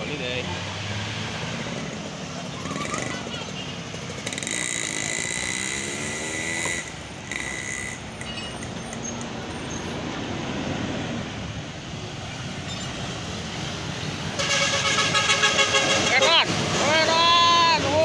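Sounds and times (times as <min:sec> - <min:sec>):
bus engine climbing: 0:00.0 - 0:18.0
passing traffic rumble: 0:00.0 - 0:18.0.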